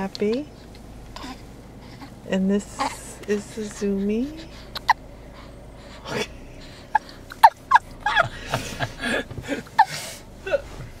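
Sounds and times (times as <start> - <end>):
soft breathy rustling: 0.2 - 11.0
baby hiccuping: 1.2 - 1.4, 2.8 - 3.1, 4.6 - 5.0.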